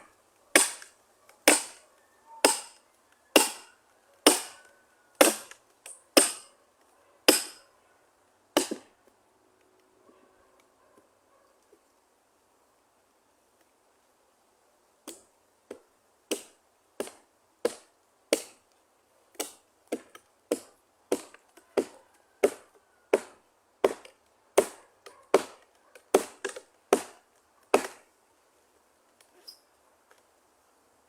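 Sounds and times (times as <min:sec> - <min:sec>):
axe chopping wood: 0:00.5 - 0:01.8, 0:02.4 - 0:04.6, 0:05.2 - 0:06.5, 0:07.3 - 0:07.6, 0:08.6 - 0:08.9, 0:15.0 - 0:18.6, 0:19.3 - 0:28.1.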